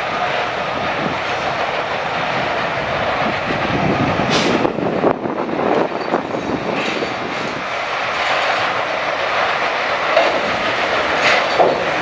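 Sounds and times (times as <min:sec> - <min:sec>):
sawmill machinery clatter: 0:00.0 - 0:04.9, 0:05.6 - 0:12.0
knocks and clanks: 0:06.0 - 0:08.8, 0:10.1 - 0:12.0.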